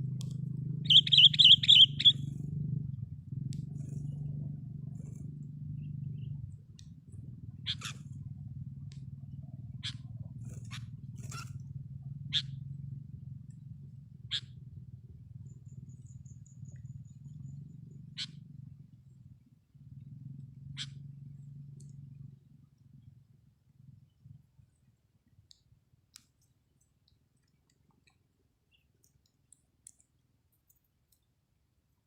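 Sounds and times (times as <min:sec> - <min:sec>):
steady low hum: 0:00.0 - 0:32.0
short sharp bird calls: 0:00.8 - 0:02.4, 0:07.6 - 0:08.1.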